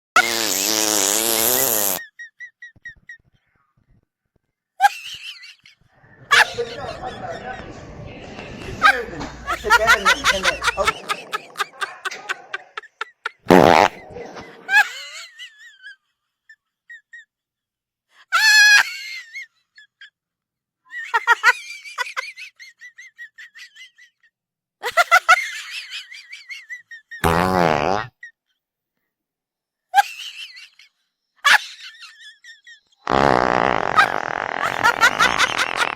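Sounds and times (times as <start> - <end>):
fake fart sound effects: 0.2 - 2.1, 13.4 - 14.9, 27.2 - 28.2, 33.0 - 35.9
bursts of laughter: 4.8 - 8.0, 8.6 - 16.0, 33.9 - 35.9.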